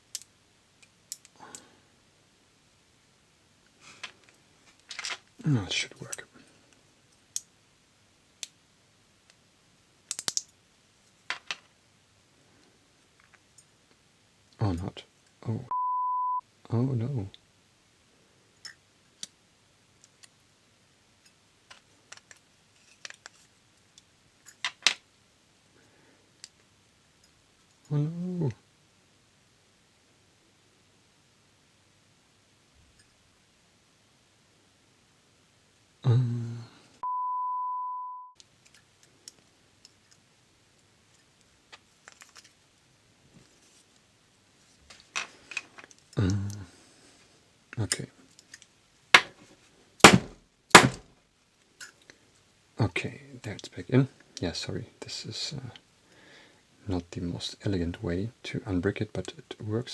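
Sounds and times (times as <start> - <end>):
lock-picking tools clicking: 0.1 - 1.6, 10.1 - 10.6
censor beep: 15.7 - 16.4, 37.0 - 38.4
short exclamation: 27.9 - 28.6.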